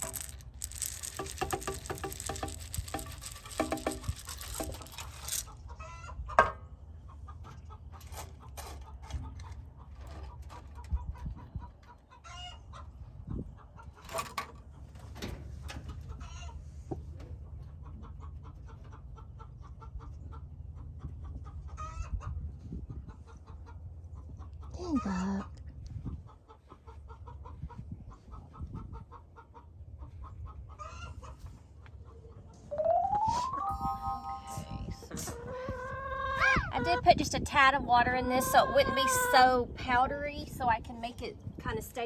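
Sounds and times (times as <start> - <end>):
chickens clucking: 5.5 - 14.2, 15.8 - 24.7, 26.0 - 37.0, 38.3 - 39.4.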